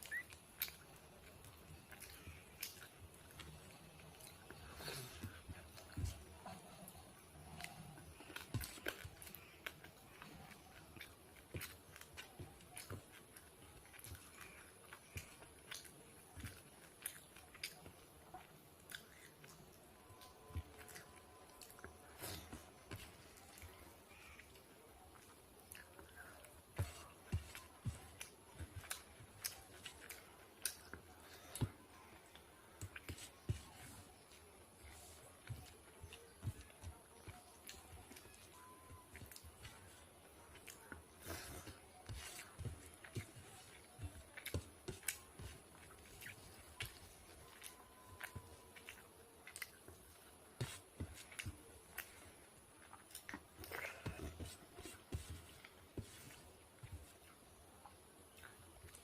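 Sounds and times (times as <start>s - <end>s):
mouth clicks and smacks: 0.0s - 39.7s
person chewing food: 0.0s - 59.0s.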